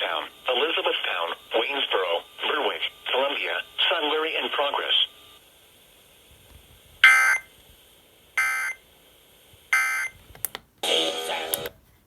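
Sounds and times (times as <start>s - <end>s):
radio audio: 0.0s - 5.3s, 11.1s - 11.8s.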